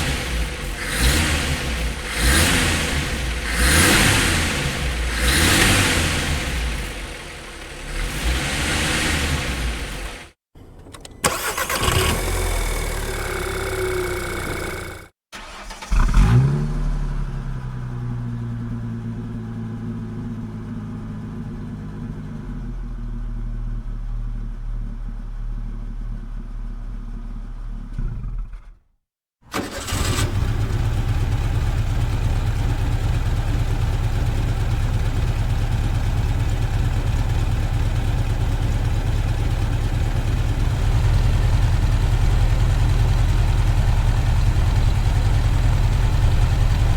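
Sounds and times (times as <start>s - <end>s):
rough engine idling: 0.0s - 10.3s, 11.2s - 15.6s, 29.6s - 46.9s
car engine idling: 0.0s - 15.8s, 29.6s - 46.9s
car engine starting: 0.0s - 28.7s, 29.5s - 46.9s.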